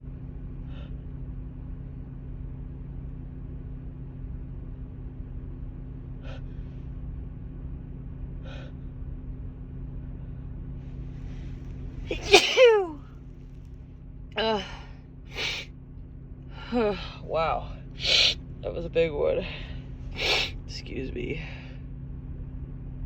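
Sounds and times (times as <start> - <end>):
steady low hum: 0.0 - 23.0
soft breathing: 14.6 - 15.7, 17.9 - 18.4, 19.4 - 20.6
woman gasping inhalations: 15.4 - 15.7.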